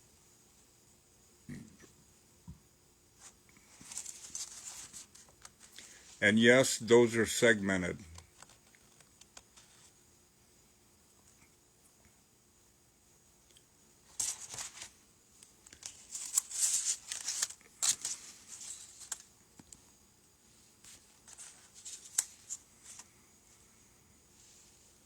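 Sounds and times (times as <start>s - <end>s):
plastic packaging crinkling: 3.8s - 6.0s, 8.0s - 9.6s, 14.1s - 19.8s, 20.9s - 23.1s.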